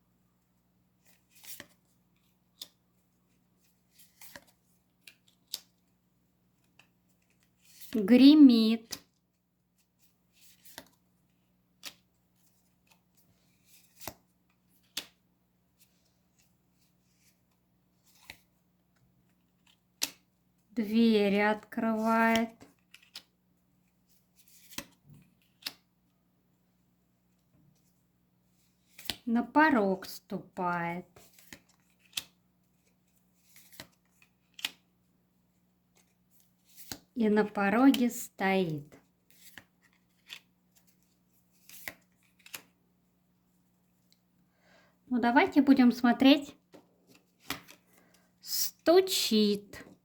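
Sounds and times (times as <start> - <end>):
faint card rustle: 1.0 - 8.0, 8.8 - 20.3, 31.0 - 34.9, 38.9 - 42.8, 46.7 - 48.4
cards clicking on a table: 11.8 - 12.1, 14.8 - 15.2, 19.6 - 20.2, 24.6 - 25.8, 33.6 - 34.8, 47.4 - 47.8
cards snapping: 11.8 - 12.1, 14.8 - 15.2, 19.6 - 20.2, 31.3 - 32.4, 33.5 - 34.9, 41.6 - 42.7, 47.4 - 47.9.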